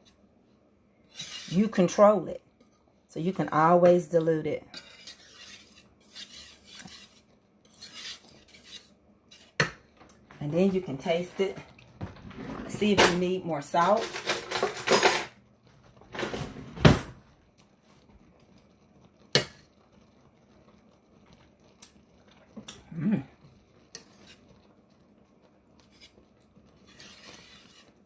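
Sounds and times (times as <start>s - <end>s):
gravy simmering in a pot: 0.0s - 10.4s, 15.4s - 28.0s
clattering scrapes: 1.1s - 1.7s, 4.7s - 9.8s, 12.0s - 13.3s, 13.9s - 15.4s, 26.8s - 28.0s.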